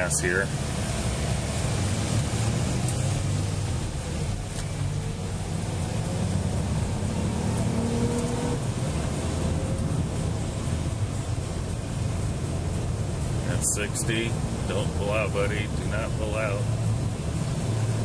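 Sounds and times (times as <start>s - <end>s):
car engine accelerating hard: 0.0s - 18.0s
tyre and road noise: 0.0s - 18.0s.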